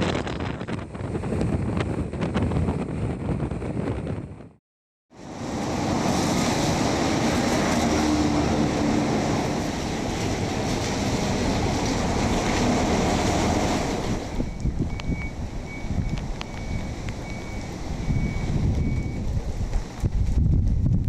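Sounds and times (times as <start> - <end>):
wind buffeting microphone: 0.0 - 4.6, 5.4 - 21.0
heavy surf: 5.2 - 14.5
typhoon wind roaring: 5.2 - 21.0.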